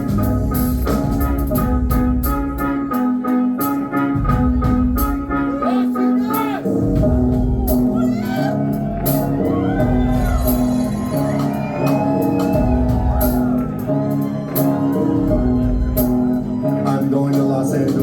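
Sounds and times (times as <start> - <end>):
rock band playing: 0.0 - 18.0
people shouting: 5.6 - 6.7, 7.3 - 16.4.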